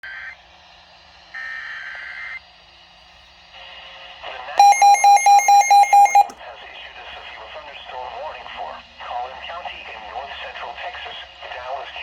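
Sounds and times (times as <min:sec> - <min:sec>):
rapidly beeping alert tone: 0:04.6 - 0:06.3
shrill digital data tones: 0:04.6 - 0:06.3.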